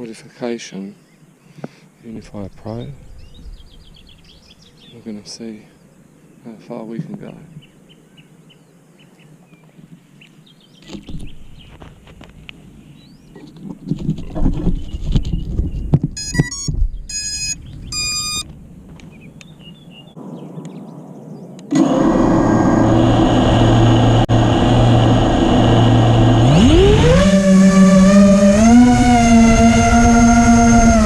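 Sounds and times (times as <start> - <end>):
short electronic beeps: 16.2 - 18.4
quadcopter motors whining: 21.7 - 31.0.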